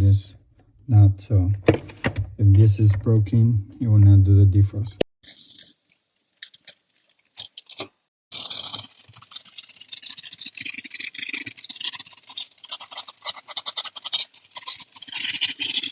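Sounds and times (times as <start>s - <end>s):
dense scraping: 0.5s - 4.2s
scratching and rubbing handling noise: 1.4s - 4.2s.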